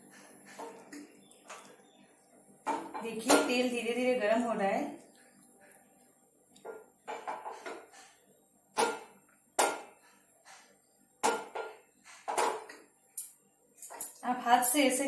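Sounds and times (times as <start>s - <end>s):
metal kitchenware clinking: 8.8s - 15.0s.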